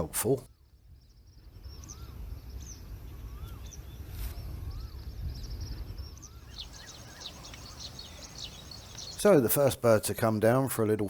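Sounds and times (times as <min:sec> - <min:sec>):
high thin bird chirps: 0:06.2 - 0:09.5.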